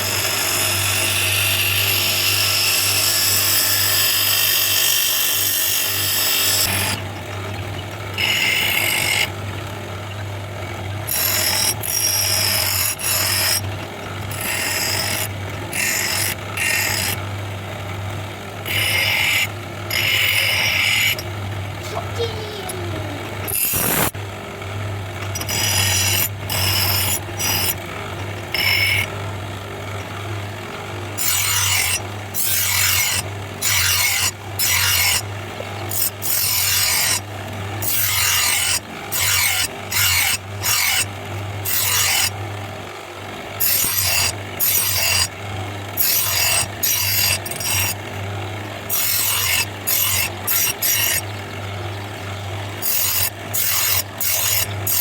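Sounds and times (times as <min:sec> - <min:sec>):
file rasping on steel blade: 0:08.2 - 0:09.3, 0:11.1 - 0:13.7, 0:14.3 - 0:17.2, 0:18.7 - 0:21.2, 0:23.5 - 0:24.1, 0:25.3 - 0:27.8, 0:28.5 - 0:29.1, 0:31.2 - 0:37.2, 0:37.8 - 0:42.4, 0:43.6 - 0:45.3, 0:46.0 - 0:48.0, 0:48.9 - 0:51.3, 0:52.8 - 0:55.0.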